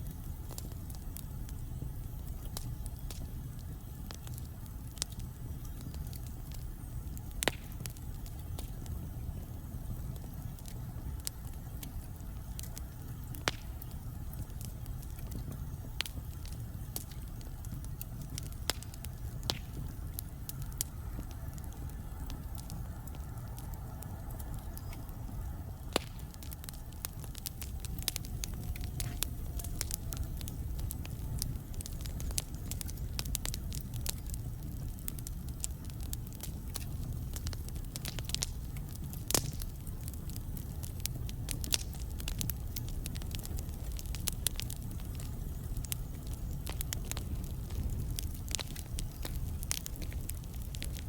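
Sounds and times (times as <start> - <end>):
fire rumbling: 0.0 - 51.0
logs crackling and popping: 0.0 - 51.0.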